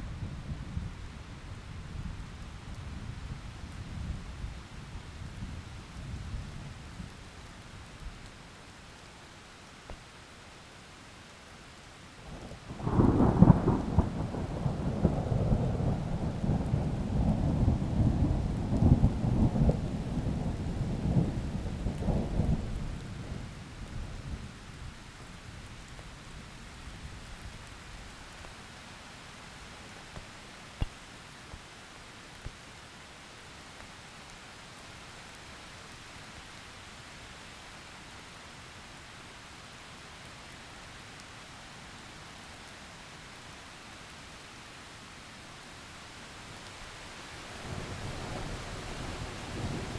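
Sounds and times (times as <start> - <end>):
steady rain: 0.0 - 49.9
thunder rumbling: 12.7 - 23.5.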